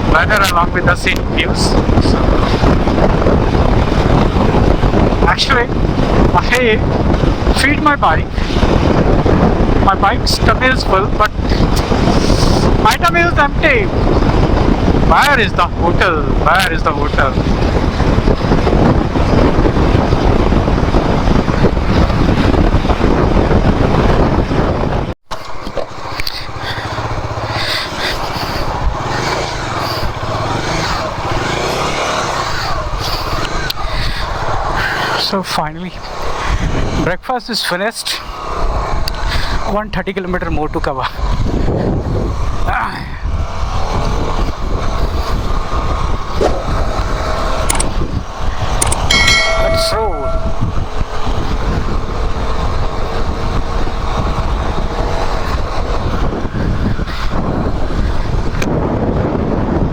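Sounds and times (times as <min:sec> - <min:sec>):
wind rushing over microphone: 0:00.0 - 0:59.9
motorcycle engine running: 0:25.4 - 0:33.4
high wavering sounds: 0:49.0 - 0:51.0.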